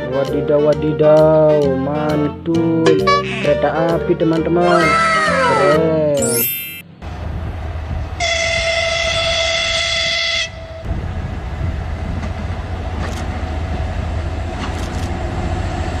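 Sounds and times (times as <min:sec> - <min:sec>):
train rumbling: 0:07.0 - 0:16.0
train horn blast: 0:08.2 - 0:10.8.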